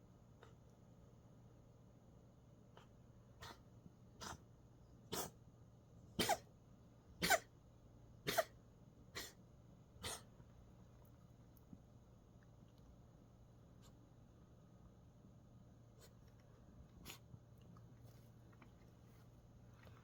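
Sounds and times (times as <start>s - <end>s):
cat coughing: 5.1s - 5.4s, 6.2s - 6.5s, 7.2s - 7.6s, 8.2s - 9.4s, 10.0s - 10.3s.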